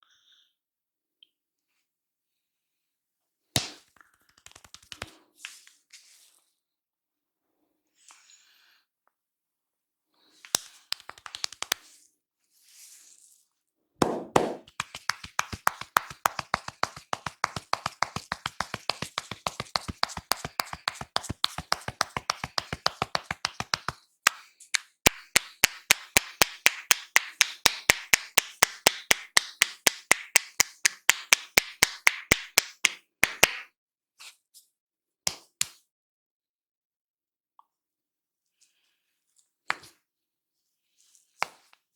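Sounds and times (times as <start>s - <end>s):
hands tapping on head: 10.9s - 11.8s, 14.0s - 33.7s.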